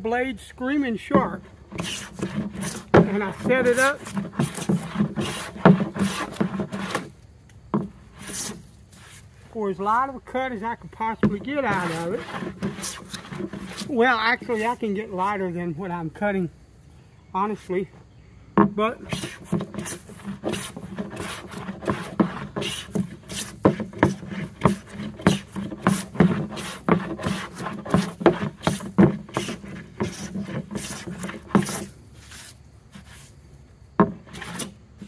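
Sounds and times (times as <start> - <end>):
hand plane strokes swishing: 1.1 - 7.1, 7.8 - 9.3, 11.2 - 15.0, 18.9 - 33.4, 34.0 - 35.0.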